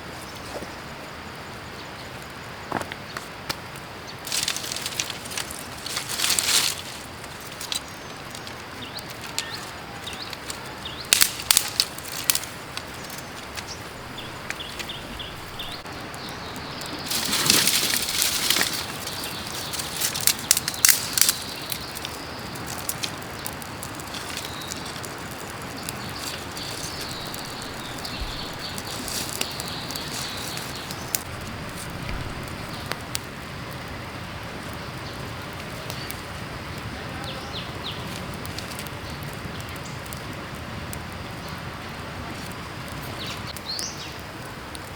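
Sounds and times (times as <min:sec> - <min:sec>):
creek running: 0:03.7 - 0:43.5
rustling and clicking from handling: 0:04.3 - 0:15.9, 0:16.9 - 0:33.2.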